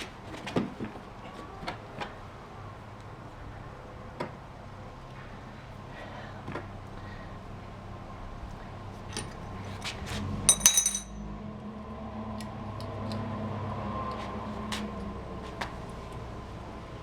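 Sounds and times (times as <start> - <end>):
metal tools clinking: 10.5 - 11.2.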